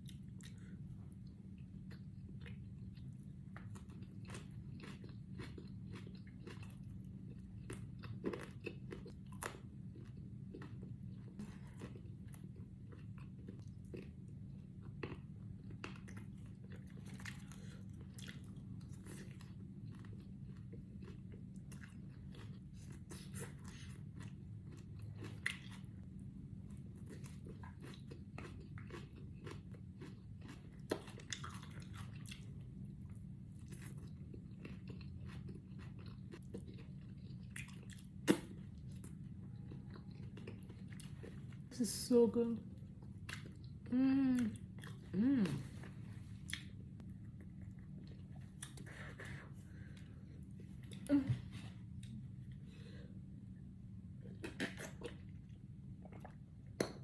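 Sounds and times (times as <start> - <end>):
person chewing crunchy food: 0.0 - 41.7, 42.8 - 51.1, 54.1 - 57.0
steady low hum: 0.0 - 57.0.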